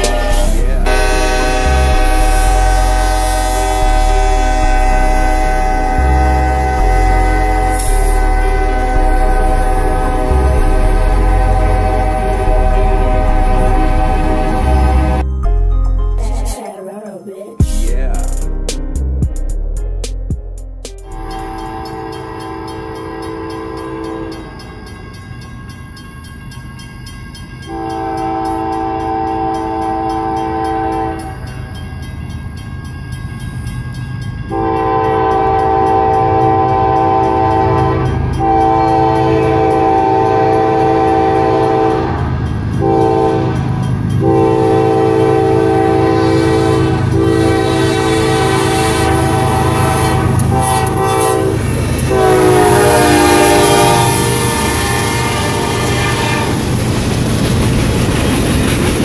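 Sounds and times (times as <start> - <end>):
diesel engine running: 0.0 - 15.2
locomotive air horn blasts: 0.0 - 15.2, 21.1 - 24.5, 27.6 - 31.5, 34.5 - 56.8.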